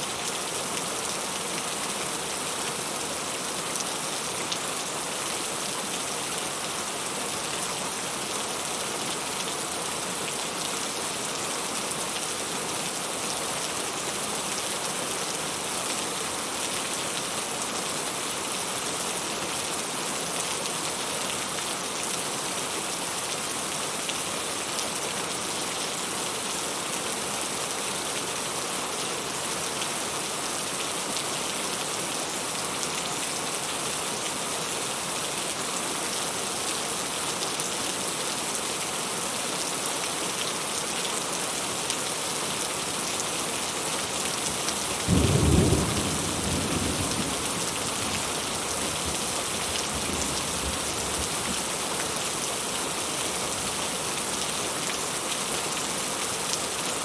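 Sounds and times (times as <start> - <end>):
heavy rain hissing: 42.8 - 55.3.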